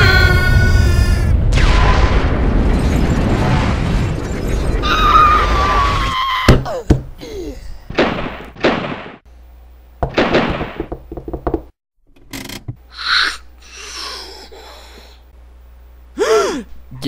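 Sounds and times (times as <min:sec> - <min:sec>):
knocks and thuds: 0:06.5 - 0:07.2, 0:10.0 - 0:11.8.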